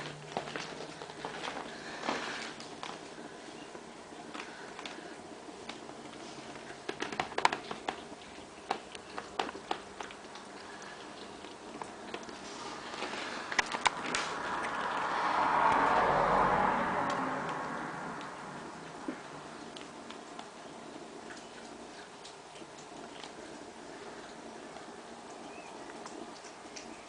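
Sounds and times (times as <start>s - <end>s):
kittens eating: 0.0s - 27.0s
rushing noise: 14.2s - 19.5s.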